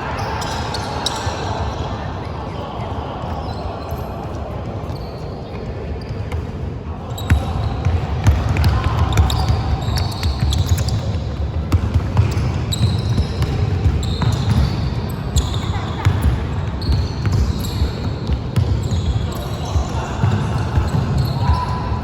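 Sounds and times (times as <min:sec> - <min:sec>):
murmur of voices: 0:00.0 - 0:12.1, 0:13.2 - 0:22.0
sneaker squeaks: 0:00.0 - 0:22.0
basketball bouncing: 0:07.3 - 0:21.7.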